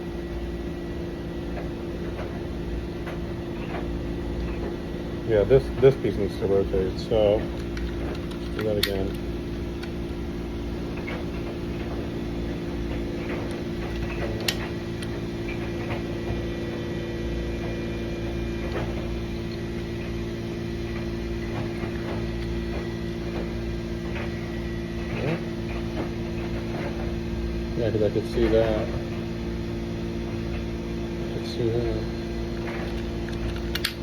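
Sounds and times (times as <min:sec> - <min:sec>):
air conditioning hum: 0:00.0 - 0:34.0
lock parts clicking and tapping: 0:07.4 - 0:10.0, 0:32.6 - 0:34.0.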